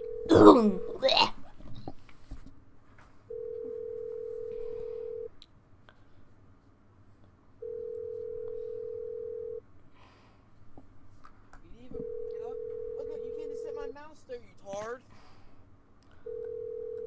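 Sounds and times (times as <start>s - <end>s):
telephone ringback tone: 0.0s - 0.9s, 3.3s - 5.3s, 7.6s - 9.6s, 11.9s - 14.0s, 16.2s - 17.0s.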